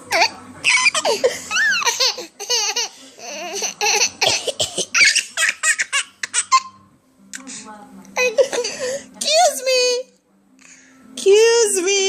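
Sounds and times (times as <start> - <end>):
baby giggling: 0.1 - 6.8.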